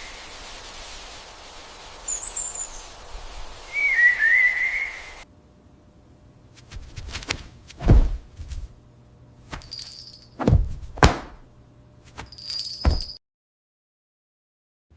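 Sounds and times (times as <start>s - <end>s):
faint high ringing tone: 9.6s - 10.4s, 12.3s - 13.2s.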